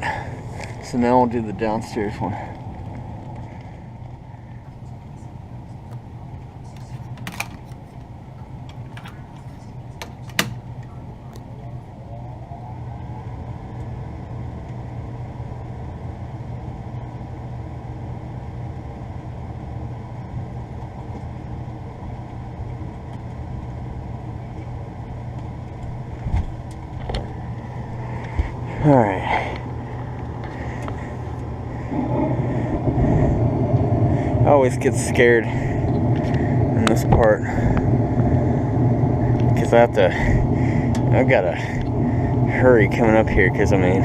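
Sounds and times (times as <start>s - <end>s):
fan motor whine: 0.0s - 44.0s
low furnace hum: 0.0s - 44.0s
sharp furnace clicks: 4.7s - 11.7s.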